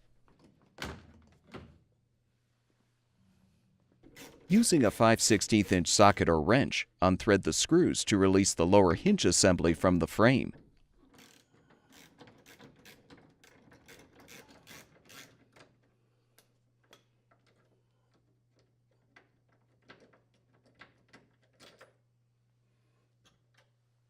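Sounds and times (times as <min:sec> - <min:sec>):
ratchet clicking: 0:11.2 - 0:15.4.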